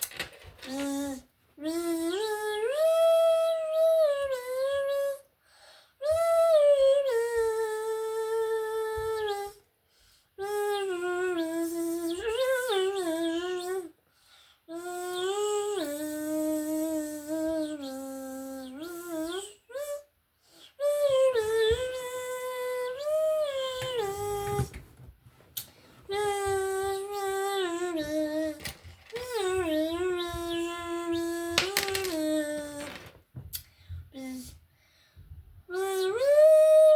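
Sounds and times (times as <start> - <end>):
child humming: 0.6 - 5.3, 6.0 - 9.6, 10.4 - 14.0, 14.7 - 24.8, 26.1 - 33.0, 34.1 - 34.6, 35.7 - 36.9.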